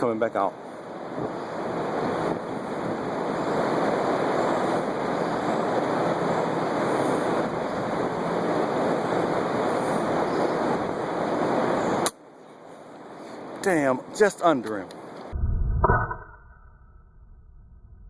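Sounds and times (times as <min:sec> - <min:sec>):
strong wind buffeting microphone: 0:00.8 - 0:12.0.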